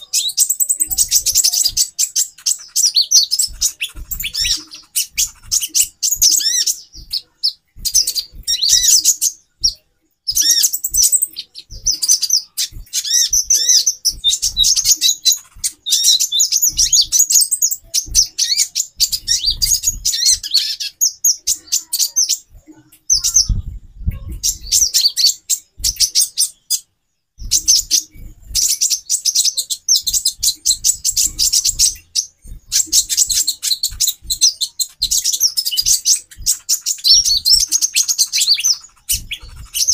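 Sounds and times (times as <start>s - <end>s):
birds twittering: 0.0s - 39.9s.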